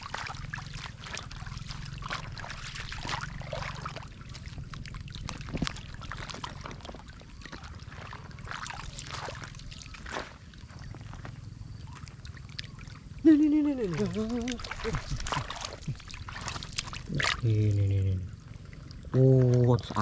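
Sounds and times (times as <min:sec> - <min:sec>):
low hum: 0:00.0 - 0:20.0
water trickling and splashing: 0:00.0 - 0:20.0.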